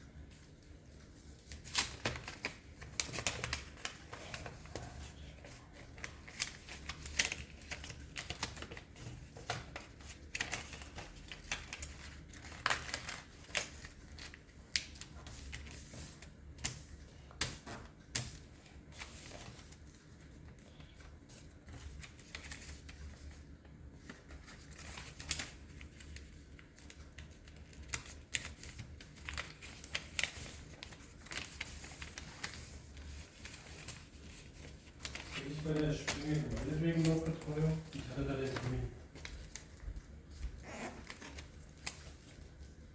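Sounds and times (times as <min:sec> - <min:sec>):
paper being folded and creased: 0:00.0 - 0:42.9.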